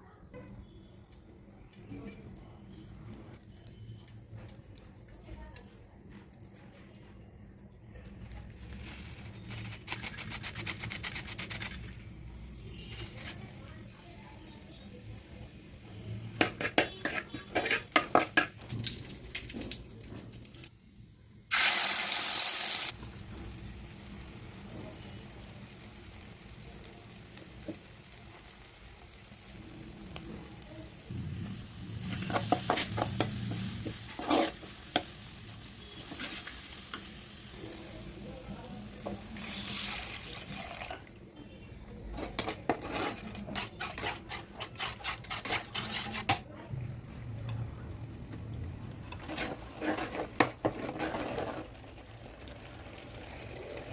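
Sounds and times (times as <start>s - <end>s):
low steady sizzle: 0.5s - 10.0s, 11.7s - 53.9s
spoon stirring and scraping pan: 15.9s - 18.8s, 31.6s - 40.3s, 41.8s - 46.7s, 49.0s - 52.4s.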